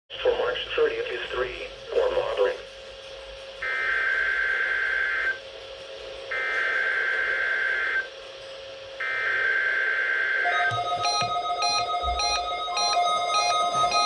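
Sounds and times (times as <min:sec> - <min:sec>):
steady electronic tones: 0:00.7 - 0:14.0
bursts of data tones: 0:09.0 - 0:14.0.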